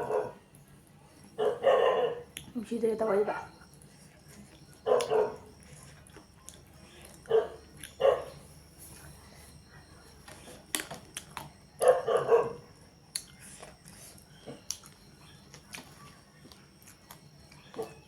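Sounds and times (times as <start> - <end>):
dog barking: 0.0 - 0.4, 1.4 - 2.2, 4.9 - 5.5, 7.3 - 8.4, 11.8 - 12.7.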